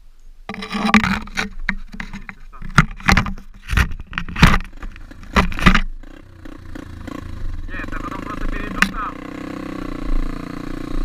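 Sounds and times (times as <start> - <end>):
pit bike gear rattling and knocking: 0.5 - 6.0.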